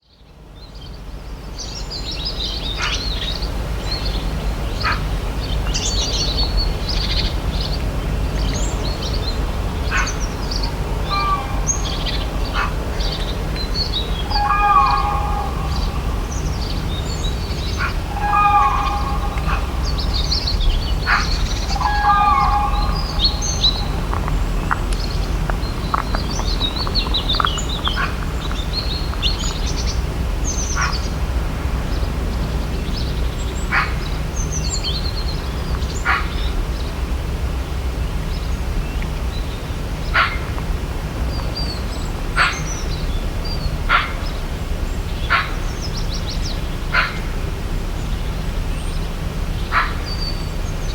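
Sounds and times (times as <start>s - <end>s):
birds chirping: 1.6s - 37.0s
low rumble: 6.3s - 35.9s
low bird calls: 8.4s - 36.9s.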